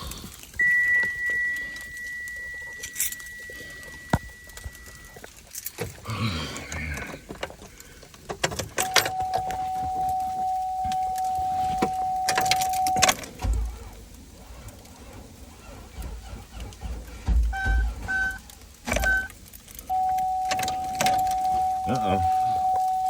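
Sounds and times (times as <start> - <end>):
steady electronic tone: 0.6 - 5.2
keys jangling and clicking: 1.0 - 6.0.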